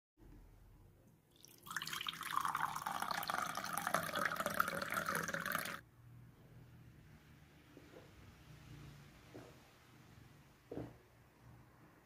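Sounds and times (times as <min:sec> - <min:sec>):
water running: 0:01.3 - 0:05.8.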